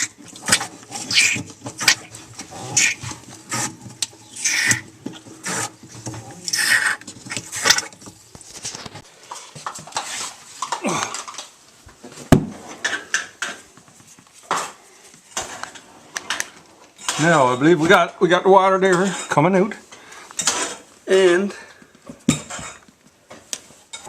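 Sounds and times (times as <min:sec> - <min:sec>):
wet squirting and sucking: 0:00.0 - 0:05.7, 0:06.4 - 0:07.7.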